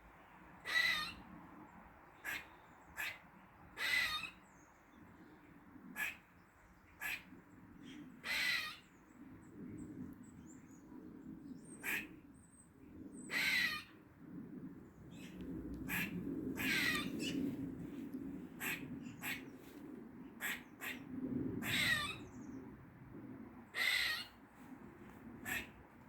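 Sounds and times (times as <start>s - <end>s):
squirrel barking calls: 0.6s - 1.2s, 2.2s - 3.2s, 3.8s - 4.4s, 6.0s - 6.3s, 7.0s - 7.3s, 8.2s - 8.9s, 11.8s - 12.1s, 13.3s - 13.9s, 15.9s - 17.4s, 18.6s - 19.5s, 20.4s - 22.2s, 23.8s - 24.4s, 25.4s - 25.8s.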